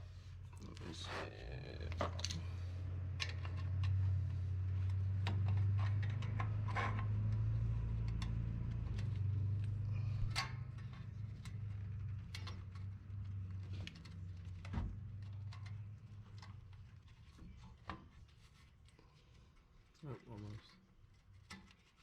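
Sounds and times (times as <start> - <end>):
brake parts clicking and knocking: 1.9 - 17.9.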